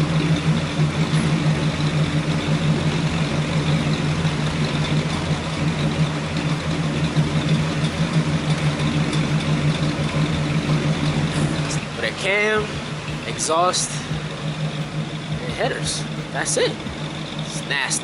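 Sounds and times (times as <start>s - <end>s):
car engine idling unevenly: 0.0s - 18.0s
person speaking: 10.6s - 18.0s.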